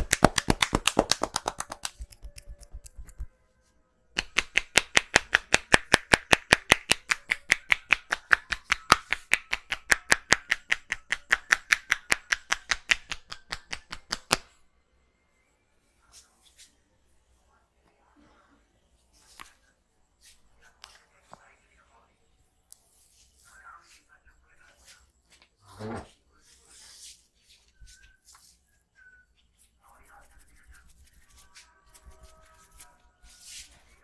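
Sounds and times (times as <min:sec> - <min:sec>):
hands slapping a head: 0:00.0 - 0:03.3, 0:04.2 - 0:14.5.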